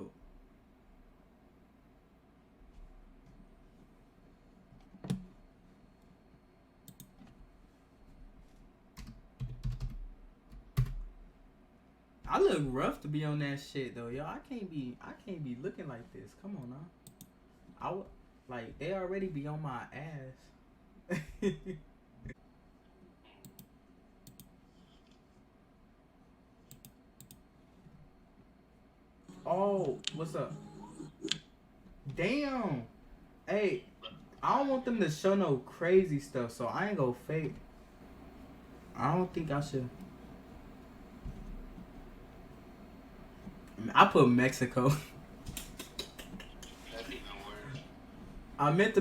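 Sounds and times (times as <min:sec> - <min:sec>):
computer mouse clicking: 0:06.8 - 0:07.4, 0:17.0 - 0:17.4, 0:23.4 - 0:25.2, 0:26.7 - 0:27.4.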